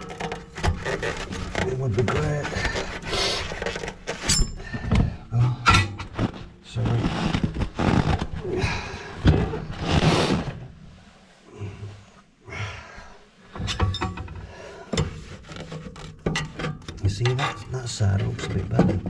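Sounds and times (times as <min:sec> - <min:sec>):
sharp clicks and knocks: 0:00.0 - 0:06.5
rough scraping of stove grate: 0:00.0 - 0:08.3, 0:13.4 - 0:19.0.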